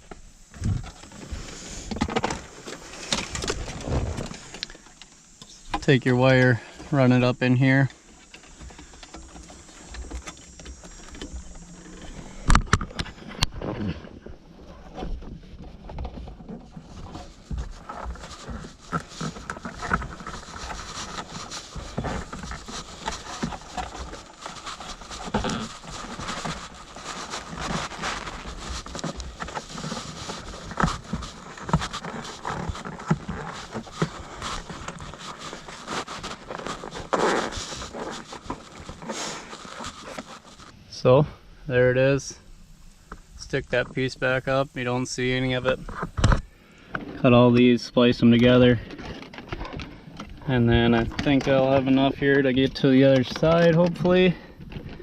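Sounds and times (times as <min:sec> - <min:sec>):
wire scraping behind plastic trim: 0:15.9 - 0:40.7.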